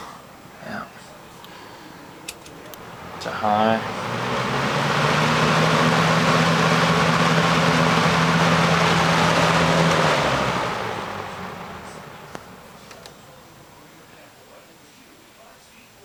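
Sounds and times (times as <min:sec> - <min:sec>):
fan motor hum: 0:00.0 - 0:14.6
rush of air from fan: 0:02.8 - 0:13.4.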